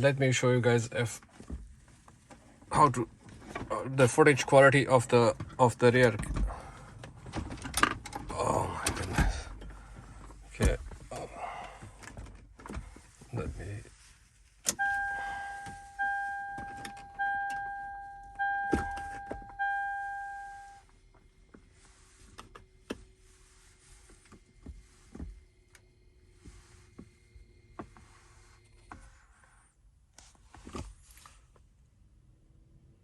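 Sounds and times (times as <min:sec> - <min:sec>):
car warning chime dings: 0:14.7 - 0:20.8.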